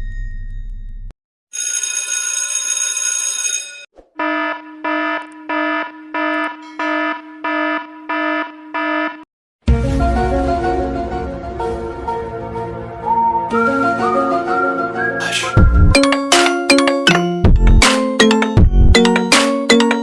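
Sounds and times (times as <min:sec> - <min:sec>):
electric bell ringing: 0:01.6 - 0:03.9
buzzing alarm beeping: 0:04.2 - 0:09.3.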